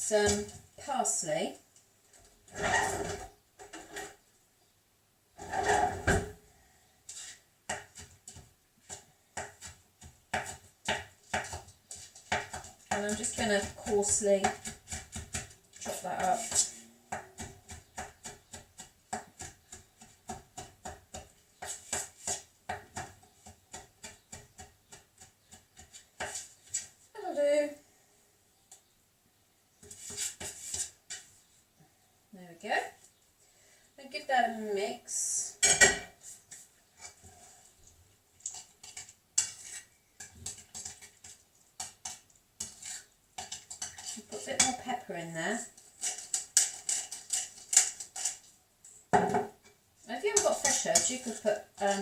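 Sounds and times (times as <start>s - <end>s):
utensil scraping a bowl: 2.5s - 4.2s, 5.4s - 6.3s, 11.3s - 27.0s, 29.8s - 31.3s, 38.4s - 48.6s, 50.2s - 52.0s
knife chopping parsley: 7.7s - 26.9s.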